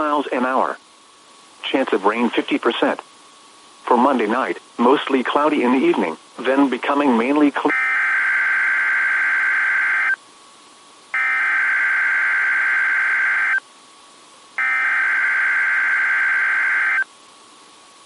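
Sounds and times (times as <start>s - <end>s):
digital data tone bursts: 7.7s - 10.2s, 11.1s - 13.6s, 14.6s - 17.1s.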